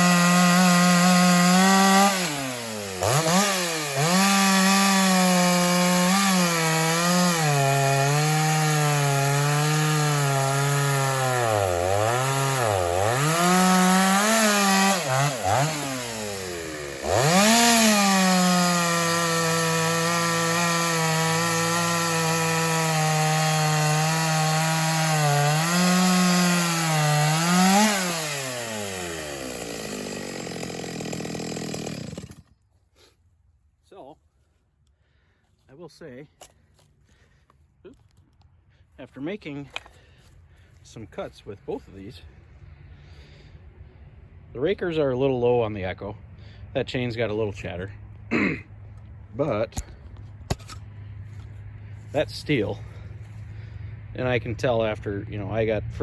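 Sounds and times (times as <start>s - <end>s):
chainsaw cutting wood: 0.0s - 33.1s, 49.4s - 53.7s.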